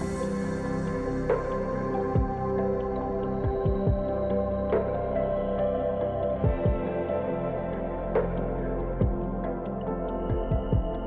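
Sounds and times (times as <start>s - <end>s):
deep drum hit: 6.4s - 7.0s, 9.0s - 9.2s.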